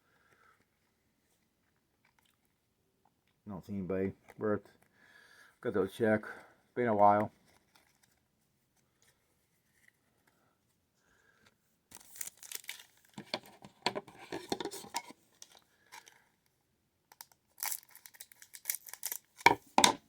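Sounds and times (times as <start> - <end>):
wrapper crinkling and tearing: 11.9 - 13.2, 17.1 - 19.5.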